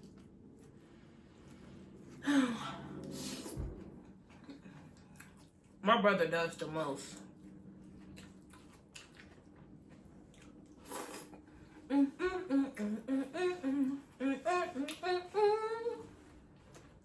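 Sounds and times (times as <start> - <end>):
person humming: 11.9 - 16.1.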